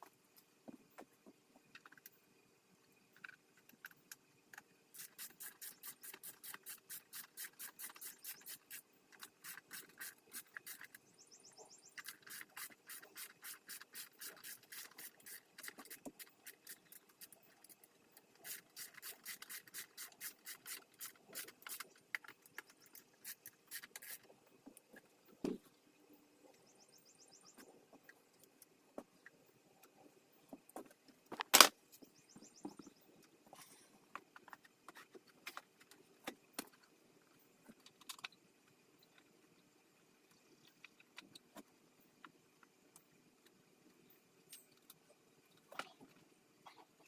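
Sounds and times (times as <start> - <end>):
faint rapid rasping strokes: 4.9 - 24.6.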